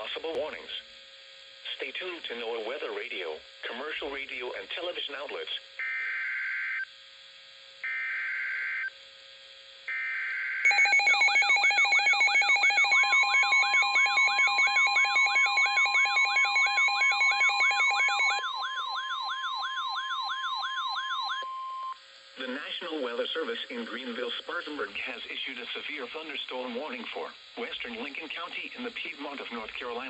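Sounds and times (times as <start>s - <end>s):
steady warning tone: 10.6s - 24.6s
steady beeping tones: 10.7s - 22.0s.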